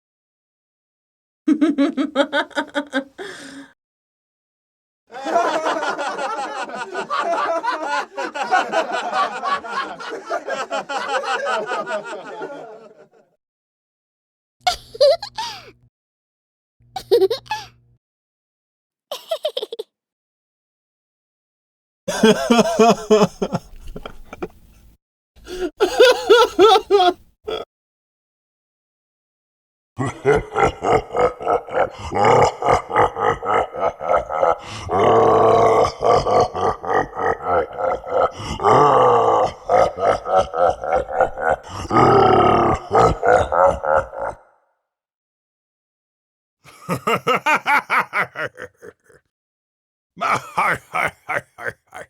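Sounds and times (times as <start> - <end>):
person laughing in pulses: 1.5 - 3.5, 14.6 - 15.8, 17.0 - 17.8, 19.1 - 19.9, 22.1 - 24.6, 25.5 - 27.6, 30.0 - 42.0, 42.9 - 44.4, 46.7 - 49.2, 50.2 - 52.0
person laughing: 1.5 - 3.7, 5.2 - 13.3, 14.6 - 15.8, 17.0 - 17.8, 19.1 - 19.9, 22.1 - 24.6, 25.5 - 27.6, 39.7 - 41.7, 42.9 - 44.4, 46.7 - 49.2, 50.2 - 52.0.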